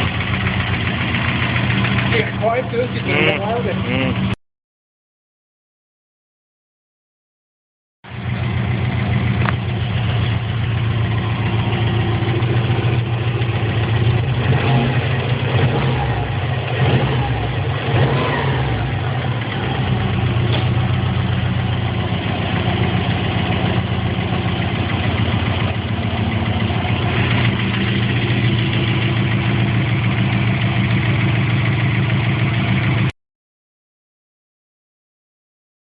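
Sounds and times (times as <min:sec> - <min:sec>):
engine running with rapid knock: 0:00.0 - 0:04.4, 0:08.1 - 0:33.1.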